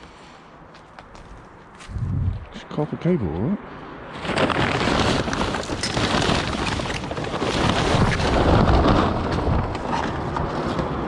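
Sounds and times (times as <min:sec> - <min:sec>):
scrap metal rustling and clattering: 0:04.1 - 0:10.8.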